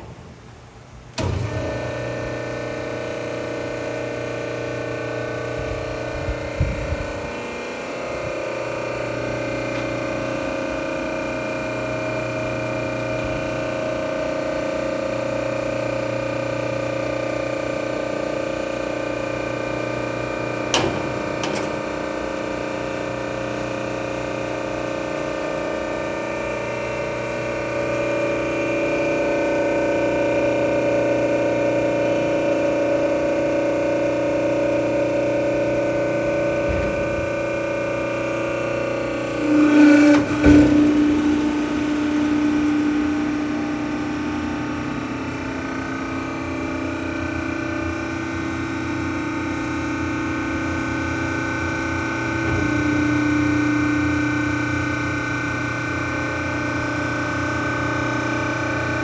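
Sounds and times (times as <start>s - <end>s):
hydraulic power unit whining hum: 0.0s - 59.0s.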